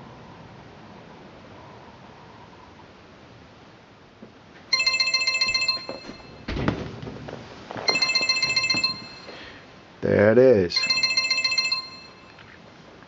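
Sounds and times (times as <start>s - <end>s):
cell phone ringtone: 4.7s - 6.5s, 7.9s - 9.7s, 10.8s - 12.4s.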